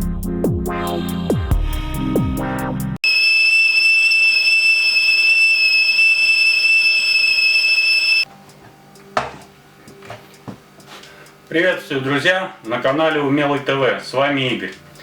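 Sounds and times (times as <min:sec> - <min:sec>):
kettle whistle: 0:03.0 - 0:08.3.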